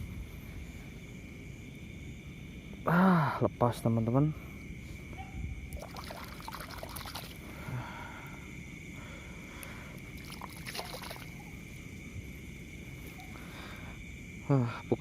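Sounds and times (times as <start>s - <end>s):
night insects trilling: 0.0s - 15.0s
water trickling and sloshing: 5.7s - 7.5s, 10.0s - 11.6s.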